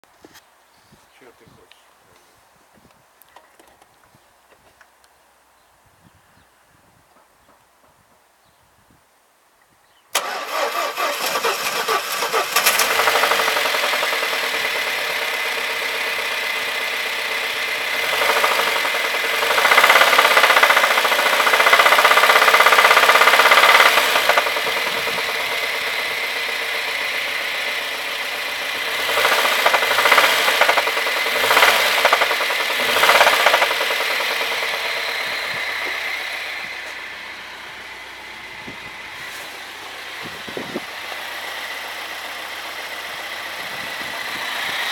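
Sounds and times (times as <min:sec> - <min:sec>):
engine running with a knock: 0:12.8 - 0:37.3.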